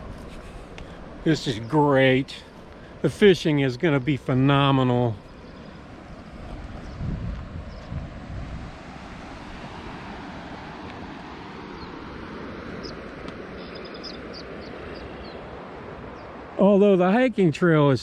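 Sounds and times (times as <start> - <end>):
wind buffeting microphone: 5.2 - 16.6
faint bird chirps: 12.8 - 15.4.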